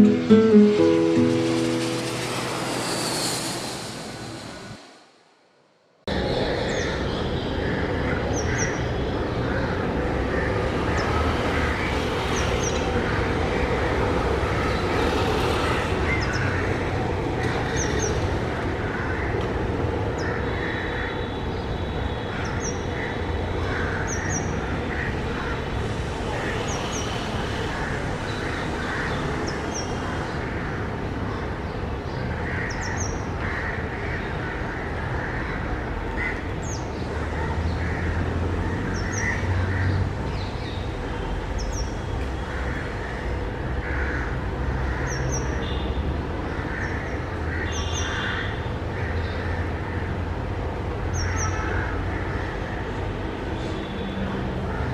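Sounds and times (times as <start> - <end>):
high double bird notes: 0.0 - 5.0.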